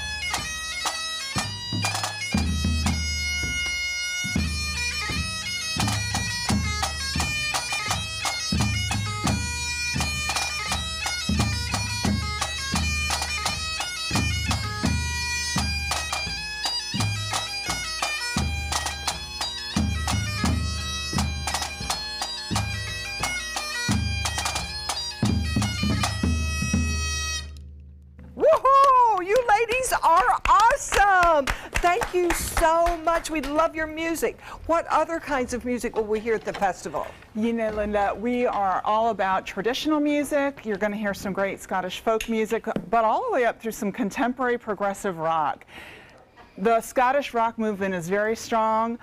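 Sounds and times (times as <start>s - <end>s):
bagpipes playing a march: 0.0s - 27.7s
drum strokes: 0.0s - 28.4s.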